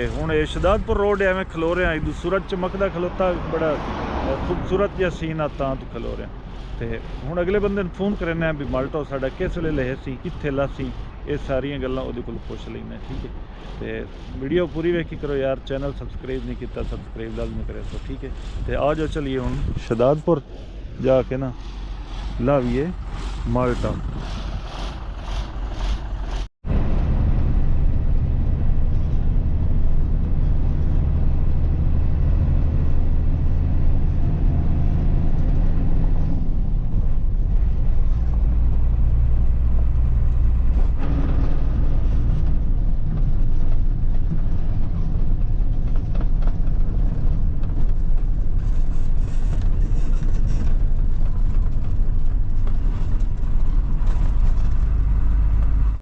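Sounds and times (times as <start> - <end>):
truck engine and road rumble: 0.0 - 56.0.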